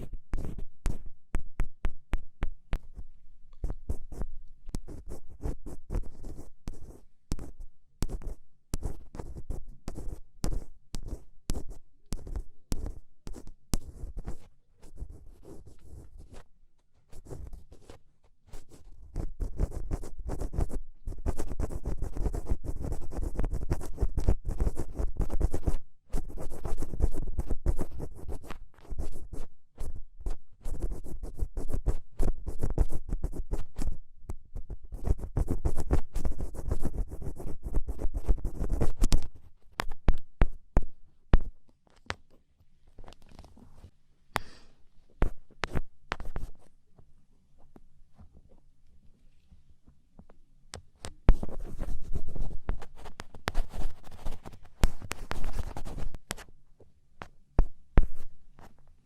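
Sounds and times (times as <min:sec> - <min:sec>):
ear pick scratching microphone: 0:34.6 - 0:40.6, 0:51.2 - 0:56.5
light taps and scrapes: 0:47.6 - 0:56.5.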